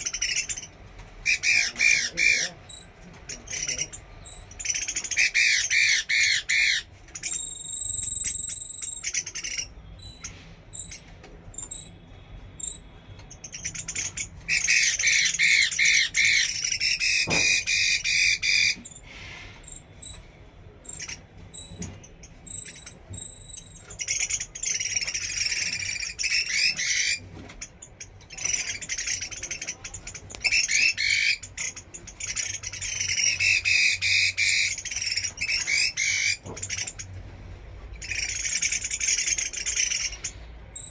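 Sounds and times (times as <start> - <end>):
bird singing fast repeated notes: 0.0 - 12.0, 12.6 - 18.9, 20.8 - 37.2, 38.0 - 40.9
clear whistled bird tone: 3.5 - 19.0, 19.6 - 27.2, 27.8 - 37.0.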